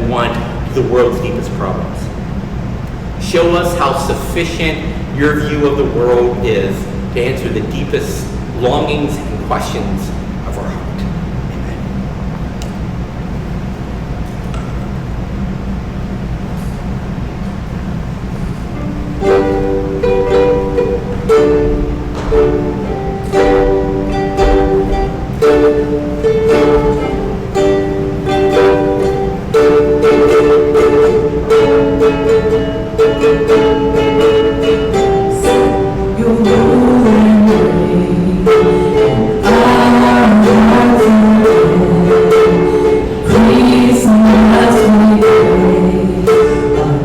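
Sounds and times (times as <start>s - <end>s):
ukulele strumming chords: 0.0s - 47.0s
lower melody line: 18.8s - 47.0s.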